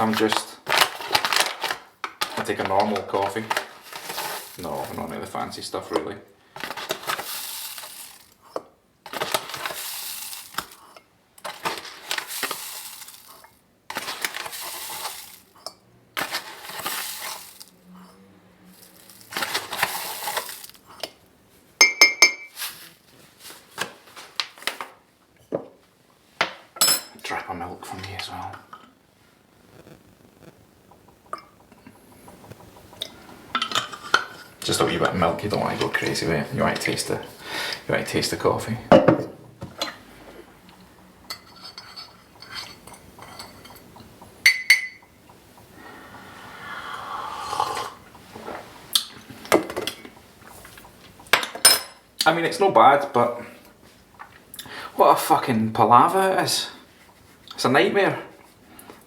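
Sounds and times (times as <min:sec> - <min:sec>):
spoon clinking against mug: 0:21.8 - 0:22.6, 0:44.4 - 0:45.1.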